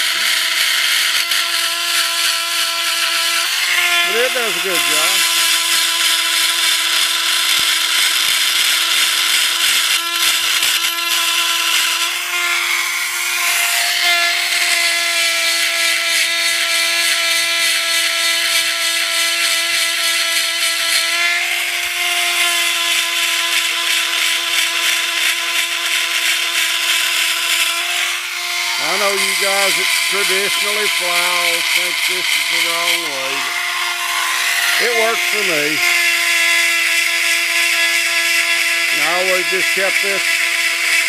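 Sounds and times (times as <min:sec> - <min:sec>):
chain grinder whining: 0:00.0 - 0:41.0
grinding wheel hissing on chain: 0:28.8 - 0:33.6, 0:34.7 - 0:35.9.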